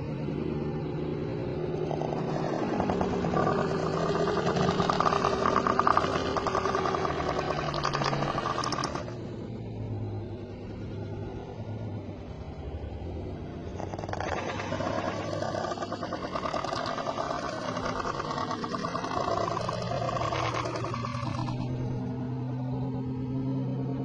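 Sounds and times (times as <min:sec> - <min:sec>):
person snoring: 0:01.8 - 0:09.2.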